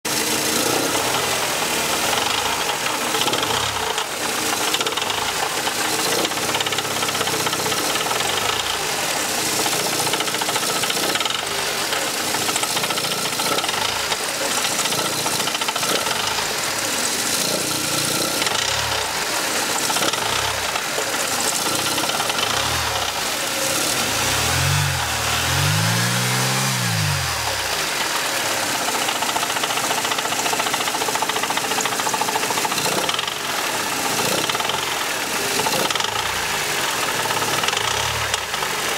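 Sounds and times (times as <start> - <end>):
engine rattling at low revs: 0.0 - 38.9.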